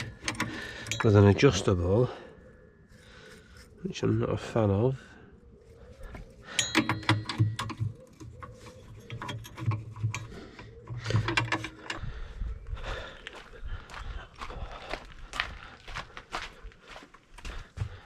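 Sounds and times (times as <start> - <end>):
metal hand tools clinking: 0.0 - 1.7, 6.5 - 10.3.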